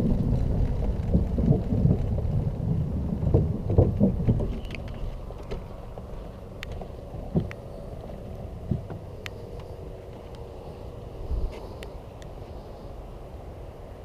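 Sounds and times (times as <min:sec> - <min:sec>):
scooter tyres rumbling on paving: 0:00.0 - 0:12.7
knocks and rattles: 0:03.1 - 0:05.7.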